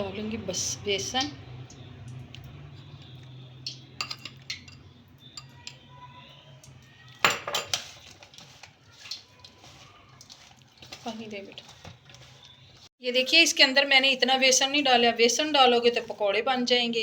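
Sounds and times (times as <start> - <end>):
utensils clinking against a bowl: 3.1 - 6.0, 6.6 - 12.8.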